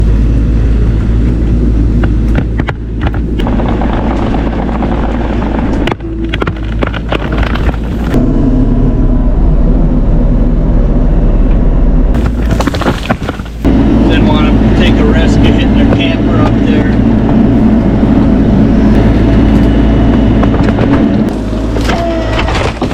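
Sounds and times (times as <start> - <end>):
diesel engine running: 0.0 - 22.9
sharp cracks and knocks: 2.0 - 8.2, 12.2 - 13.7, 19.6 - 22.9.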